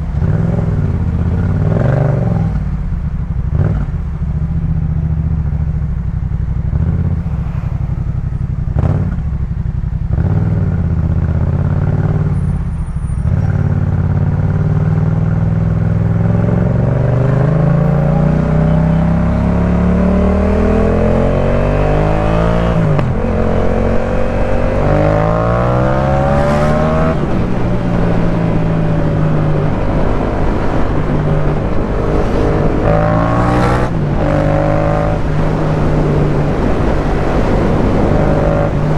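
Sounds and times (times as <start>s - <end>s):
motorcycle engine while riding: 0.0s - 38.9s.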